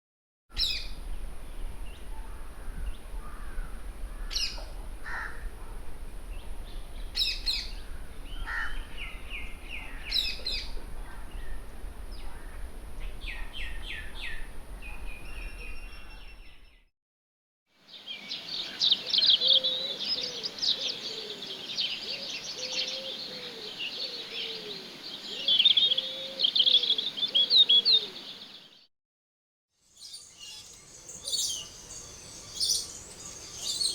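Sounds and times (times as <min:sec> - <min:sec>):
birds chirping and trilling: 0:06.3 - 0:16.8, 0:17.9 - 0:28.8, 0:29.9 - 0:33.9
low sliding bird calls: 0:30.0 - 0:33.9
thin steady high tone: 0:30.0 - 0:33.9.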